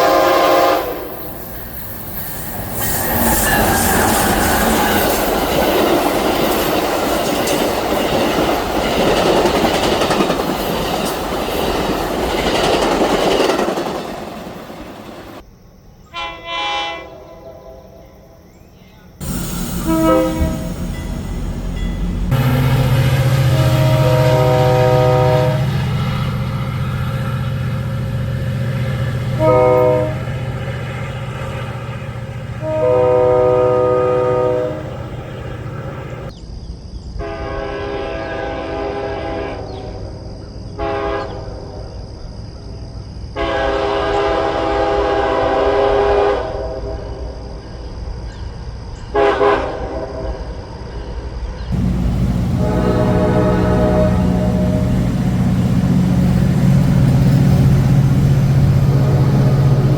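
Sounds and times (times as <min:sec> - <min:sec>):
locomotive air horn blasts: 0:00.0 - 0:01.2, 0:16.1 - 0:17.5, 0:19.2 - 0:21.7, 0:22.3 - 0:27.5, 0:29.2 - 0:30.6, 0:32.6 - 0:36.3, 0:37.2 - 0:39.7, 0:40.8 - 0:41.3, 0:43.4 - 0:46.8, 0:49.2 - 0:49.8, 0:51.7 - 0:59.9
train passing: 0:00.0 - 0:15.9, 0:16.8 - 0:36.4, 0:43.0 - 0:59.9
locomotive engine running: 0:19.2 - 0:32.7, 0:34.6 - 0:36.3, 0:51.7 - 0:59.9.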